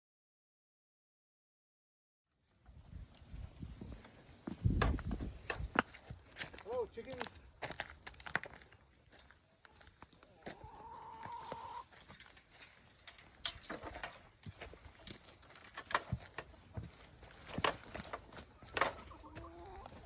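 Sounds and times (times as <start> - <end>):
footsteps: 3.1 - 20.0
chickens clucking: 9.4 - 12.2, 13.8 - 20.0
light clicks and clinks: 11.3 - 16.2.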